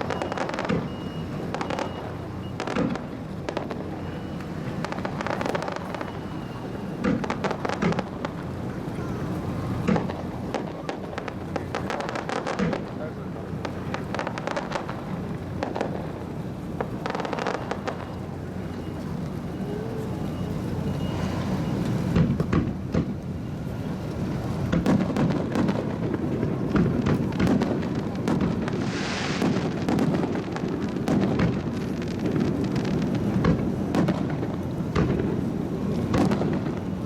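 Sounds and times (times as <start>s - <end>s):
fireworks bangs and crackles: 0.0s - 37.0s
short rushing hiss: 28.8s - 29.7s.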